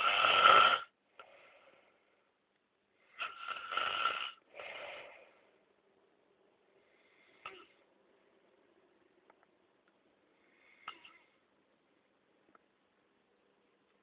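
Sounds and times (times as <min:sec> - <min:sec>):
man snoring: 0:00.0 - 0:00.9, 0:03.1 - 0:05.0.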